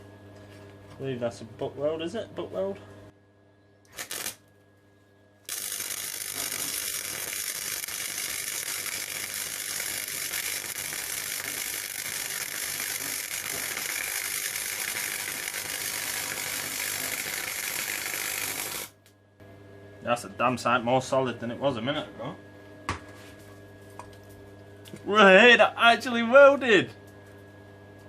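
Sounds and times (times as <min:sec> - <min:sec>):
welder arc crackling: 0:03.9 - 0:04.5, 0:05.5 - 0:19.1.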